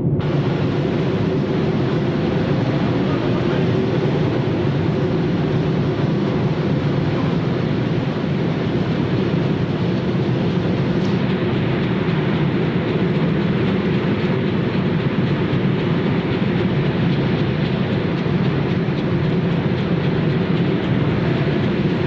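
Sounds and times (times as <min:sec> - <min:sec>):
machinery drone: 0:00.0 - 0:22.0
faint rapid ticking: 0:08.8 - 0:22.0.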